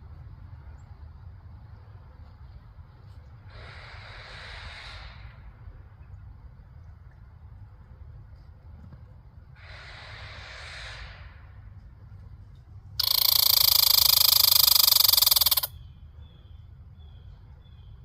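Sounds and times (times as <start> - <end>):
squirrel hissing call: 3.5 - 5.6, 9.6 - 11.5, 13.0 - 15.7
squirrel rattling chatter: 13.0 - 15.8.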